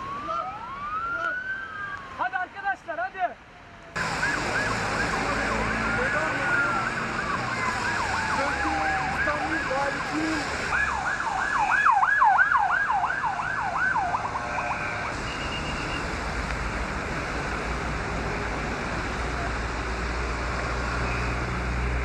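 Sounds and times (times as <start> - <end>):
siren yelping: 0.0 - 2.2, 4.0 - 15.7
road and wind noise: 0.0 - 22.0.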